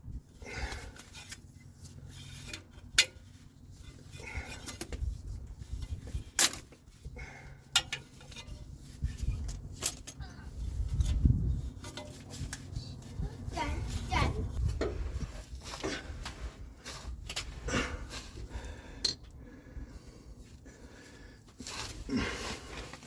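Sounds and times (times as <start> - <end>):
low rumbling handling noise: 0.8 - 19.5
metallic clinks and knocks: 7.7 - 10.3.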